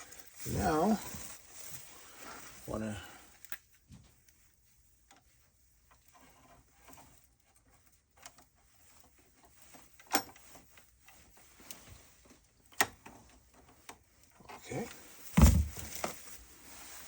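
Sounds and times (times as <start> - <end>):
hands and tools handling: 5.0 - 17.0.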